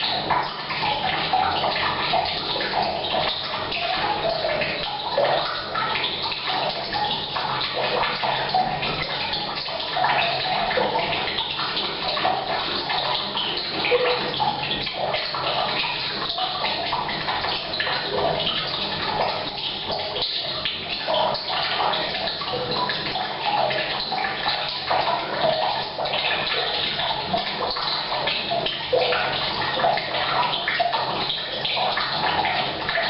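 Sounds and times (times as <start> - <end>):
water pouring into a tank: 0.0 - 33.0.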